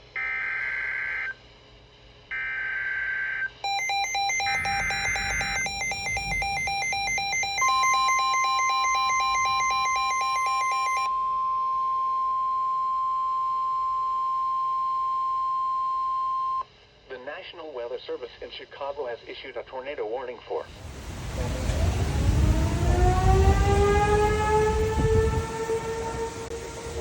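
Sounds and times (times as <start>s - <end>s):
steady warning alarm tone: 2.3s - 11.7s, 20.7s - 27.0s
screechy data tone: 3.4s - 11.1s
fast harsh alternating beep: 3.6s - 11.1s.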